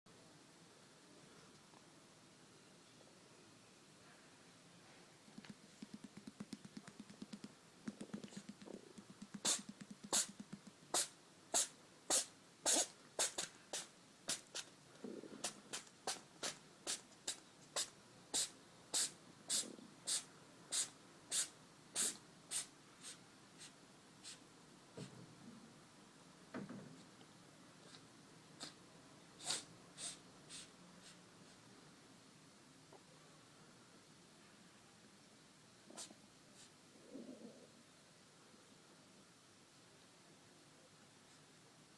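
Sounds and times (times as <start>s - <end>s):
cat snuffly breathing: 8.1s - 24.4s, 28.6s - 28.8s, 29.4s - 31.6s
cat sneezing: 9.3s - 14.7s, 15.4s - 24.4s, 28.6s - 28.8s, 29.4s - 31.2s, 36.0s - 36.2s.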